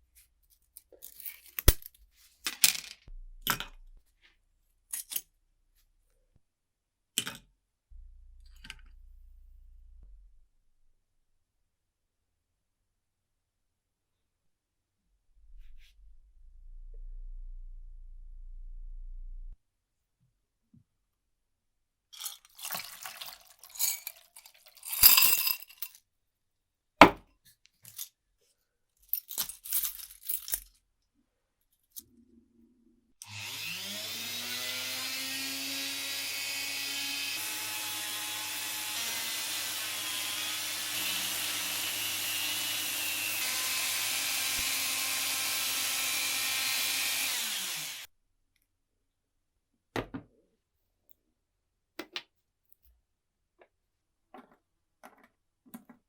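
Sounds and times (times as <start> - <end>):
small metal parts clicking: 22.2 - 26.0, 29.1 - 30.8
small electric power tool grinding: 33.2 - 48.1.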